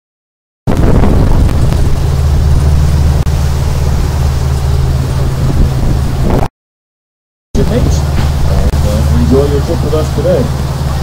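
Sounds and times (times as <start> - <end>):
boat engine droning: 0.7 - 6.5, 7.6 - 11.0
water noise: 0.7 - 6.5, 7.6 - 11.0
wind noise: 0.7 - 6.5.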